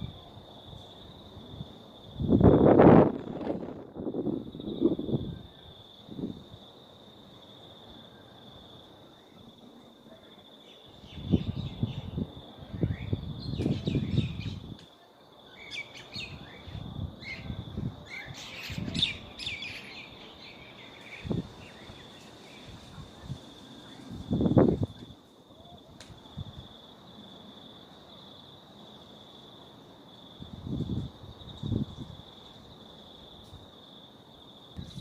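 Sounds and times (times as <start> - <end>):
wind buffeting microphone: 1.1 - 6.6, 11.0 - 14.8, 16.1 - 25.2, 30.4 - 32.4
birds chirping: 15.6 - 23.0.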